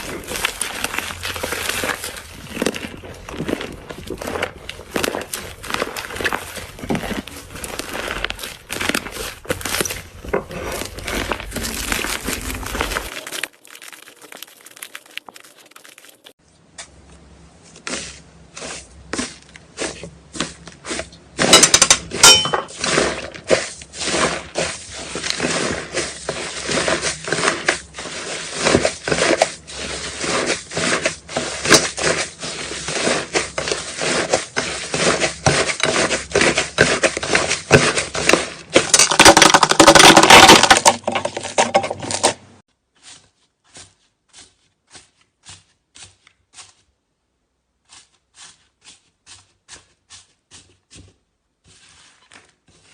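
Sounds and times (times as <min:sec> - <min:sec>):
slime squishing and popping: 0:00.0 - 0:16.4.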